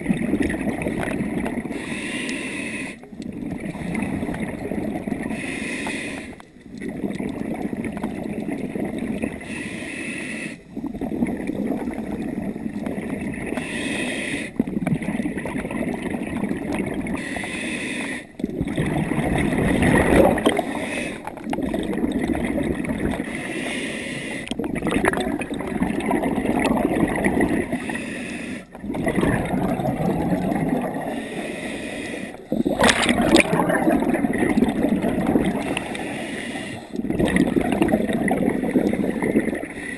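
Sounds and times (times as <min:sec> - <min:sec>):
exhaled bubbles gurgling: 0:00.0 - 0:09.8, 0:10.4 - 0:39.9
scuba regulator breathing: 0:01.6 - 0:03.2, 0:05.2 - 0:06.5, 0:09.3 - 0:10.8, 0:13.5 - 0:14.6, 0:17.0 - 0:18.6, 0:20.1 - 0:21.6, 0:23.1 - 0:24.6, 0:27.6 - 0:37.2, 0:38.5 - 0:39.9.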